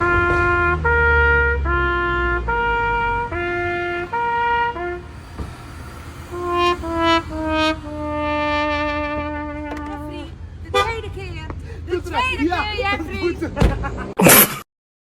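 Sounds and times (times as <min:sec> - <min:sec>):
two-tone siren: 0:00.0 - 0:05.3
sad trombone: 0:06.3 - 0:10.0.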